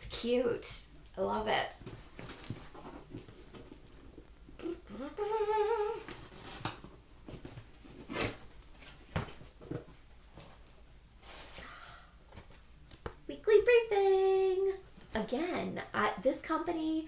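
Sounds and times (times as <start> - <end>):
woman humming: 4.6 - 6.2.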